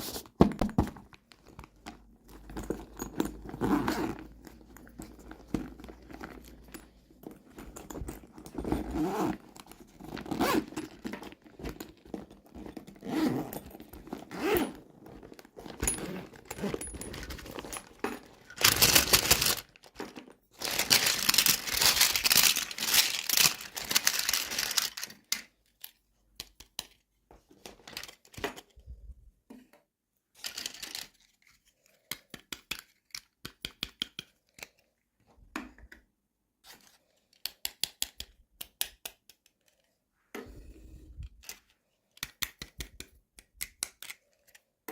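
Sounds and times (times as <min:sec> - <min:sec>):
plastic and paper crinkling: 0:13.7 - 0:25.4
small clicks and snaps: 0:42.2 - 0:44.7.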